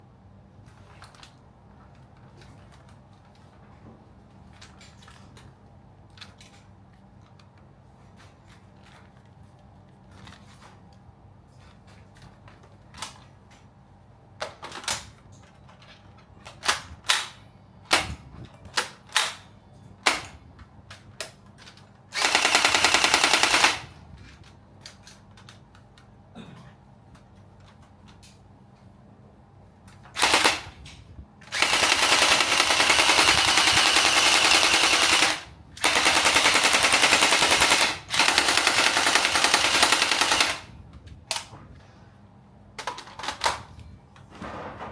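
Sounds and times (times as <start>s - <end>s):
gel blaster full-auto burst: 22.2s - 23.9s, 30.2s - 30.7s, 31.5s - 40.7s.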